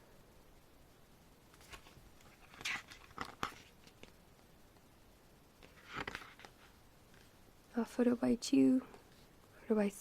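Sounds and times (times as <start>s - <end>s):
book pages rustling: 1.5s - 4.2s, 5.6s - 7.4s.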